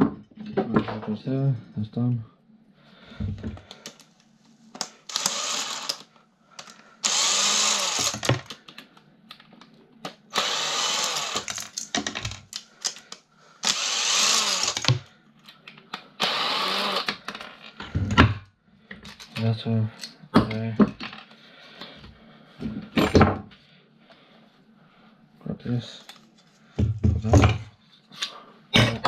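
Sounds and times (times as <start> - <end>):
cordless drill running: 5.0 - 6.1, 7.0 - 8.5, 10.3 - 11.7, 13.6 - 15.0, 16.2 - 17.2.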